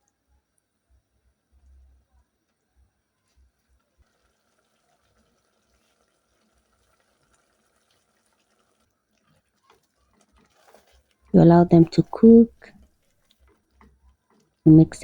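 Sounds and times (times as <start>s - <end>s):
crackles and ticks over hiss: 0.0s - 11.4s
food simmering in a pot: 0.0s - 15.0s.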